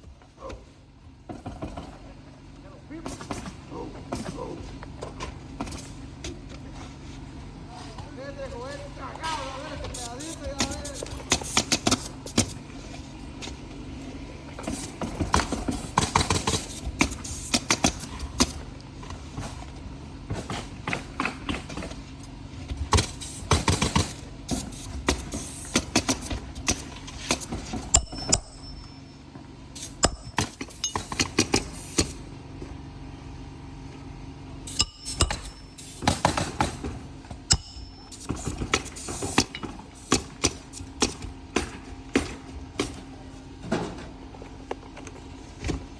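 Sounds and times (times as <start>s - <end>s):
low hum: 34.5s - 36.1s, 36.9s - 38.7s.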